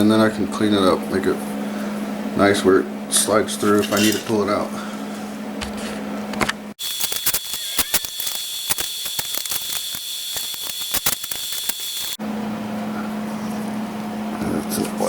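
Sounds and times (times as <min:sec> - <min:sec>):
welding arc crackling: 0:06.8 - 0:12.2.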